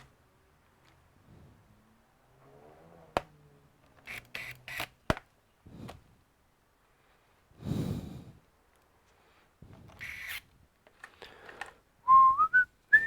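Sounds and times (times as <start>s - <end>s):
sharp clicks: 3.9s - 5.3s.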